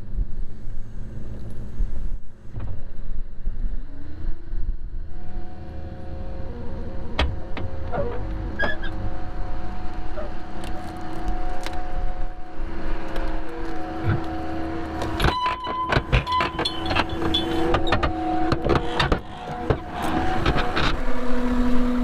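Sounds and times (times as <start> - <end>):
diesel engine running: 3.6 - 22.0.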